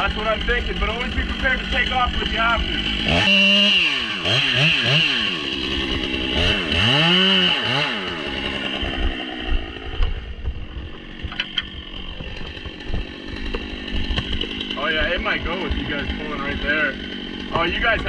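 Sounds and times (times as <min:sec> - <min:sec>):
chainsaw revving: 0:00.0 - 0:18.0
sharp cracks: 0:11.2 - 0:16.0.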